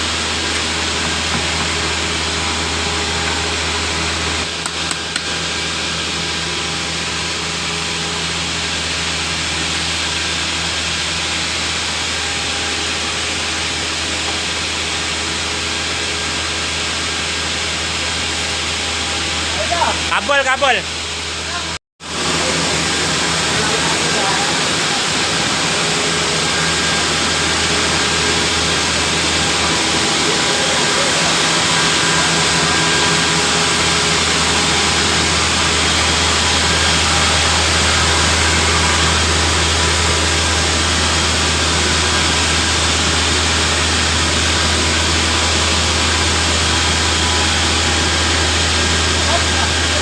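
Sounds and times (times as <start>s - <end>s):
engine droning: 22.2s - 50.0s.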